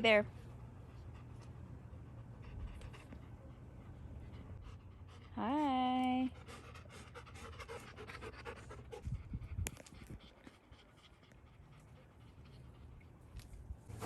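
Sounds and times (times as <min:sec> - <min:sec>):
dog panting: 0:00.8 - 0:13.0.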